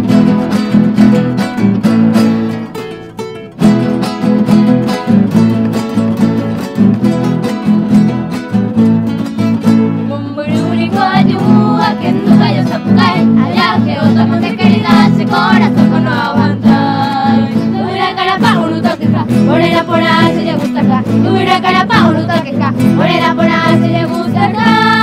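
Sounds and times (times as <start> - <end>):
polka on plucked strings: 0.0 - 25.0
voices singing: 10.0 - 25.0.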